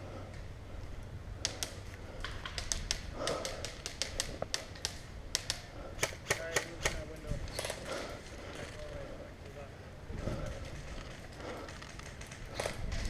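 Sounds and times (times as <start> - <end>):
airsoft guns firing: 1.5 - 7.8.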